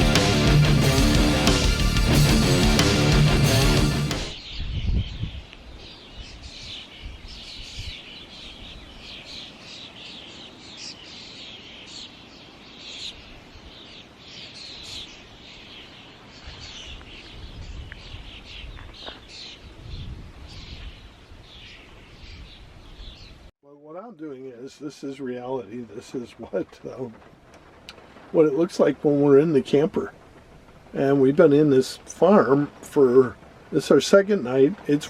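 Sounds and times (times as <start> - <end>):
small birds chirping and singing: 0.0 - 23.5
low background hiss: 23.7 - 35.0.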